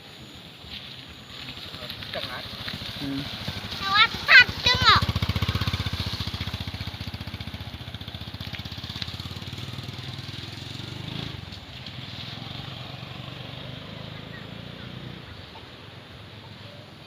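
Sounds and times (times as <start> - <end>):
small engine pulsing: 1.3 - 17.0.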